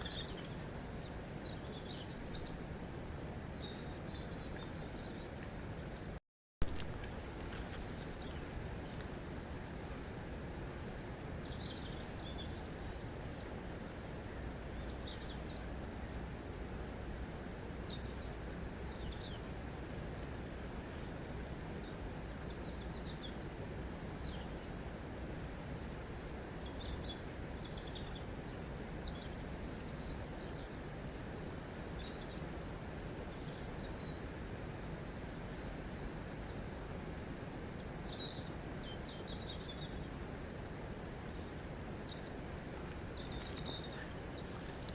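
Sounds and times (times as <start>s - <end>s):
small birds chirping: 0.0s - 6.2s, 40.8s - 44.9s
flowing water rushing: 39.9s - 44.9s.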